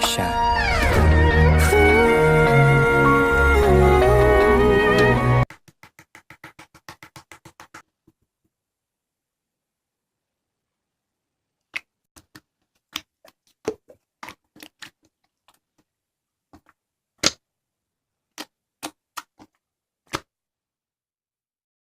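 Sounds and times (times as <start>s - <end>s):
slime clicking and popping: 17.2s - 17.4s.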